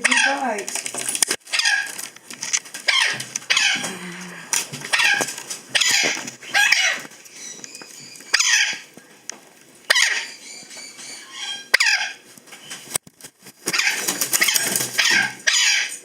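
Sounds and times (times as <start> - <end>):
parrot squawking: 0.0 - 0.6, 1.5 - 2.0, 2.8 - 3.9, 4.8 - 8.9, 9.9 - 12.2, 13.7 - 16.0.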